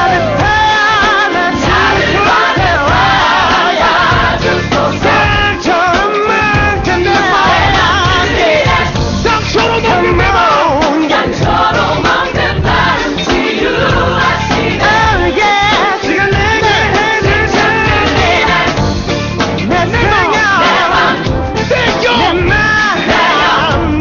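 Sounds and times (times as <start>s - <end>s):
full band playing: 0.0s - 24.0s
gospel choir singing: 0.0s - 24.0s.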